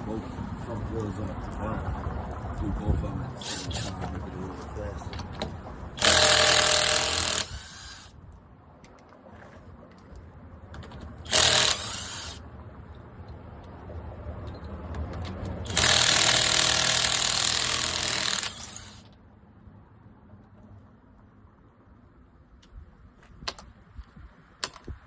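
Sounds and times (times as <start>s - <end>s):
impact wrench running: 3.4s - 4.0s, 6.0s - 8.1s, 11.2s - 12.4s, 15.6s - 19.1s.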